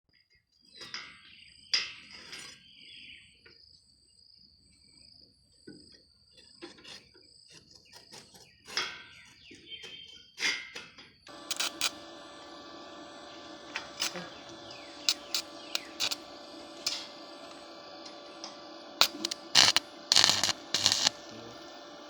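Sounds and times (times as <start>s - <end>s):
high insect trill: 11.3s - 22.0s.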